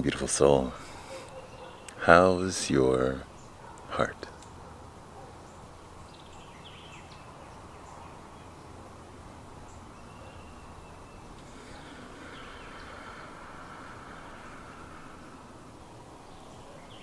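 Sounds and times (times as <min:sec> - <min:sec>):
faint high hum: 0:00.0 - 0:17.0
steady background hiss: 0:00.0 - 0:17.0
faint bird chirps: 0:00.7 - 0:17.0.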